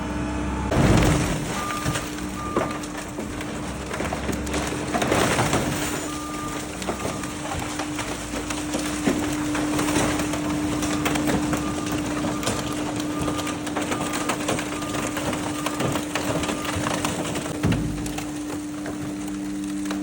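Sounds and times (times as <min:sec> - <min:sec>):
hydraulic machine hum: 0:00.0 - 0:14.6
car body cracking and crunching: 0:00.7 - 0:20.0.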